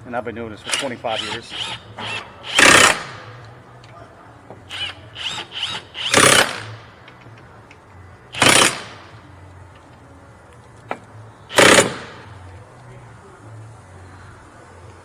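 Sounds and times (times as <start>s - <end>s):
impact wrench hammering: 0.6s - 3.4s, 4.5s - 7.2s, 8.3s - 9.2s, 10.9s - 12.4s.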